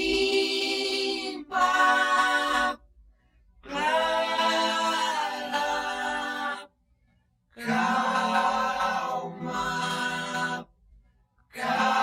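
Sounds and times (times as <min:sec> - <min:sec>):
person singing unaccompanied: 0:07.6 - 0:10.7.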